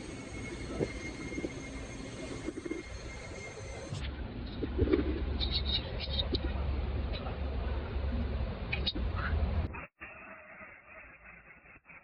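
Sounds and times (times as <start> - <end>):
steady low hum: 0.0 - 9.9.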